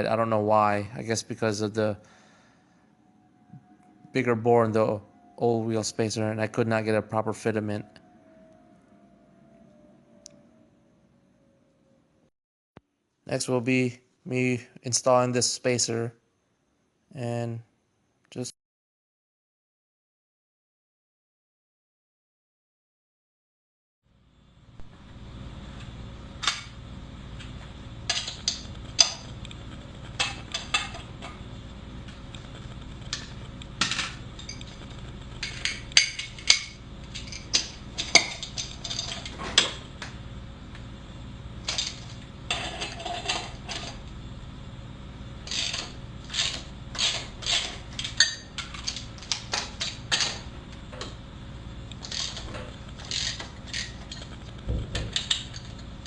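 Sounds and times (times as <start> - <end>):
steady low hum: 0.0 - 12.3, 24.1 - 56.0.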